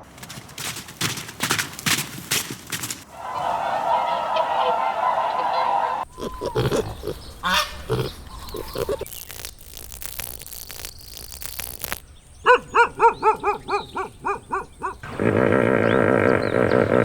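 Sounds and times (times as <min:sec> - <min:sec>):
rustling: 0:06.1 - 0:15.2.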